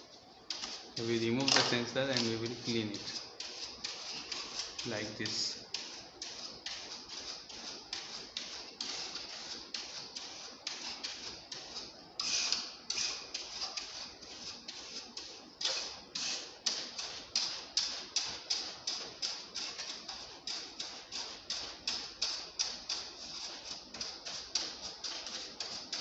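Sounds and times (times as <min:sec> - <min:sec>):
brush scrubbing metal fins: 0:00.5 - 0:26.0.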